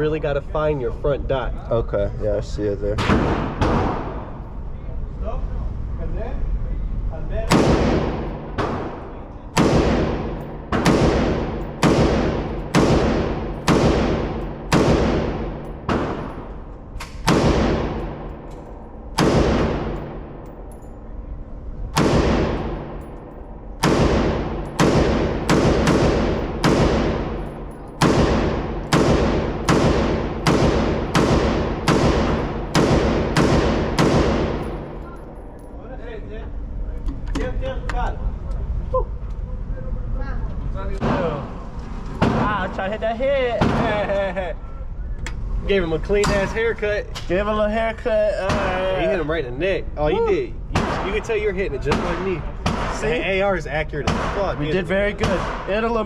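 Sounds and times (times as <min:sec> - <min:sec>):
rifle shots echoing indoors: 0:03.0 - 0:04.4, 0:07.5 - 0:21.0, 0:21.9 - 0:35.8.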